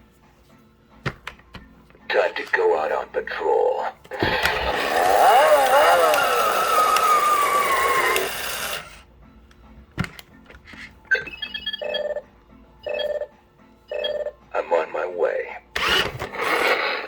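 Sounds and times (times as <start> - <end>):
toy revving engine sound effect: 4.1 - 9.0, 15.8 - 17.0.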